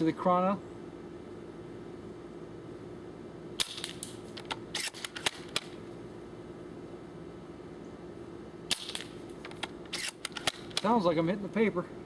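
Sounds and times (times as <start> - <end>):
steady low hum: 0.0 - 12.0
airsoft rifle shot crack: 3.6 - 4.2, 8.7 - 9.2
rifle bolt clicking and clacking: 3.6 - 5.7, 8.7 - 11.0.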